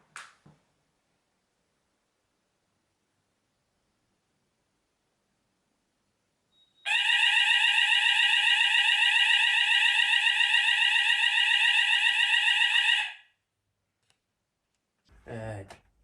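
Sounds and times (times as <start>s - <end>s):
fire alarm sweep tone: 6.6s - 13.3s.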